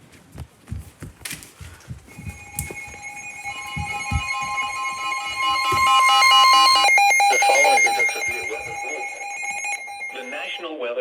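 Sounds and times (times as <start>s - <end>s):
rapid pulsing beeps: 2.1s - 10.6s
steady electronic alert tones: 2.1s - 10.6s.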